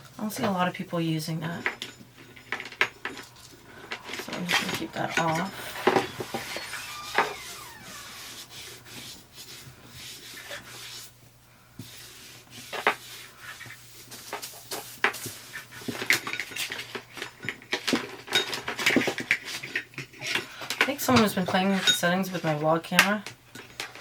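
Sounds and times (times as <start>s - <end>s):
objects rubbing on desk: 3.1s - 11.1s.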